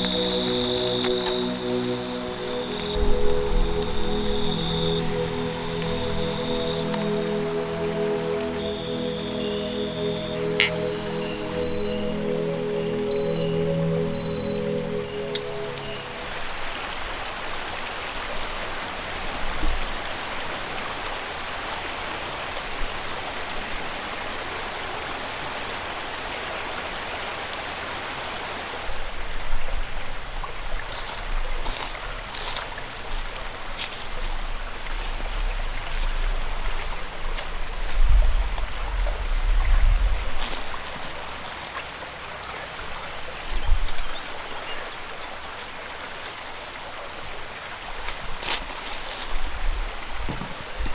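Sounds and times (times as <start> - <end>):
high-pitched whine: 0.0 - 17.6, 30.8 - 41.4
river water flowing: 0.0 - 50.9
low bumps and rumbles: 34.1 - 40.7.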